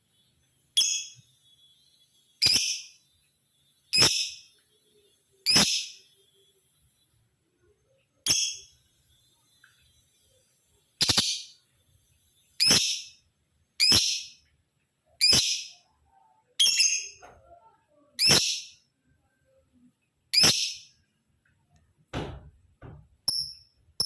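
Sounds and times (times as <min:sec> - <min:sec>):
lovebird high-pitched calls: 0:00.8 - 0:01.3, 0:02.4 - 0:03.0, 0:03.9 - 0:04.5, 0:05.4 - 0:06.1, 0:08.2 - 0:08.7, 0:11.0 - 0:11.6, 0:12.6 - 0:13.2, 0:13.8 - 0:14.4, 0:15.2 - 0:15.9, 0:16.6 - 0:17.2, 0:18.2 - 0:18.8, 0:20.3 - 0:21.0.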